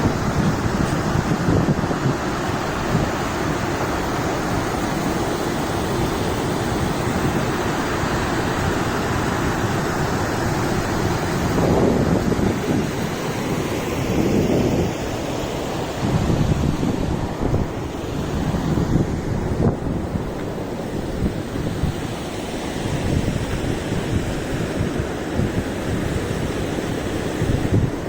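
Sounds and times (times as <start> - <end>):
wind blowing across microphone: 0.0 - 28.0.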